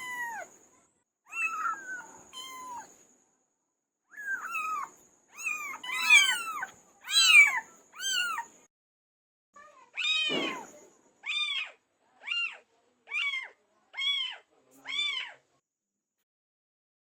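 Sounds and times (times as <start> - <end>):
cat meowing: 0.0 - 0.5, 1.3 - 2.9, 4.2 - 8.5.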